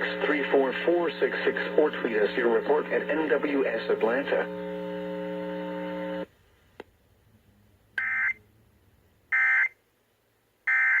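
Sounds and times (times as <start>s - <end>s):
steady buzzing tone: 0.0s - 6.3s.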